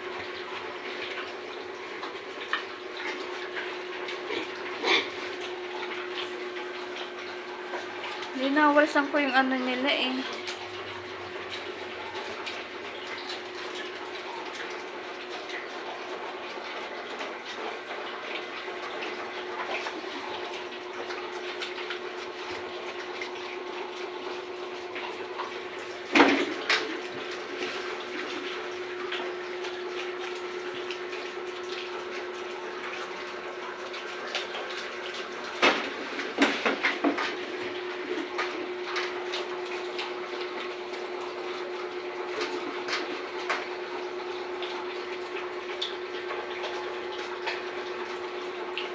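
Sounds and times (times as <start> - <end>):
water running: 0.0 - 48.9.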